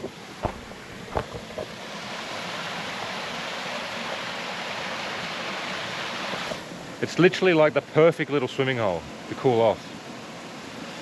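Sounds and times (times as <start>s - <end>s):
waterfall rushing into pool: 0.0s - 8.6s
brief knocks: 0.4s - 1.7s.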